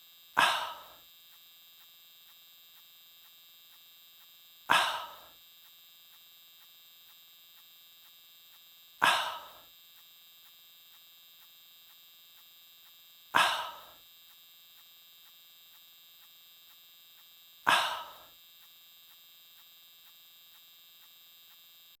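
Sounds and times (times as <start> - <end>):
faint steady hum: 0.0 - 22.0
dog barks: 0.4 - 0.9, 4.7 - 5.3, 9.0 - 9.6, 13.4 - 13.9, 17.7 - 18.2.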